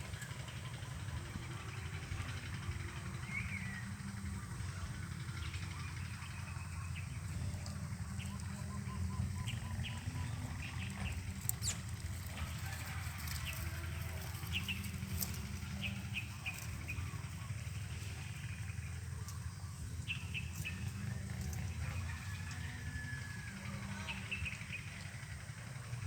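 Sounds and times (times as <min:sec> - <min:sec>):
steady low rumble: 0:00.0 - 0:26.0.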